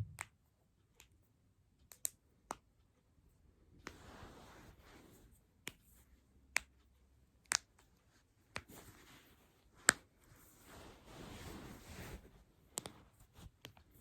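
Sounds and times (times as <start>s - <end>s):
hands rustling: 8.1s - 14.0s.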